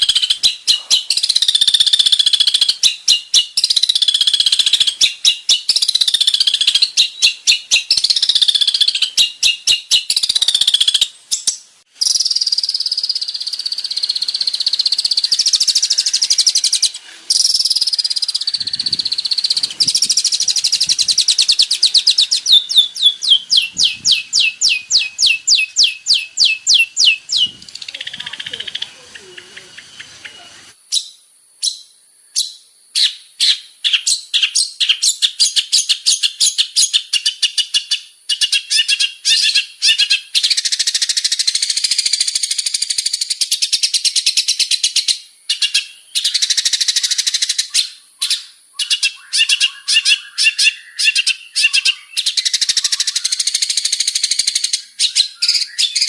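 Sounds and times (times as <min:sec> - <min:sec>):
shrike singing: 0:12.0 - 0:31.8.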